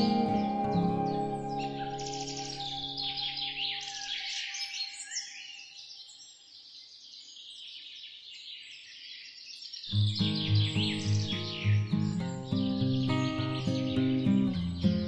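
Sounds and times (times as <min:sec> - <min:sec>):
held music chord: 0:00.0 - 0:03.5
small birds chirping: 0:00.0 - 0:15.0.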